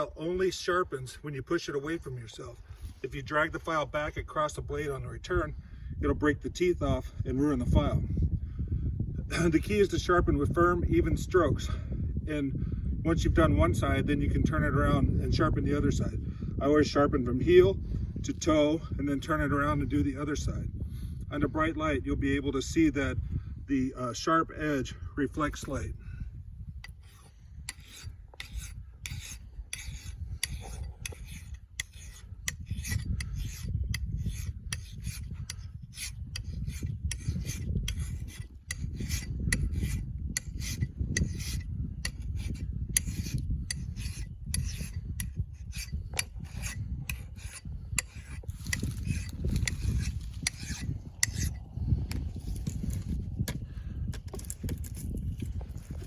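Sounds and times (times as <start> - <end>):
metal file rasping on steel: 26.8 - 53.6.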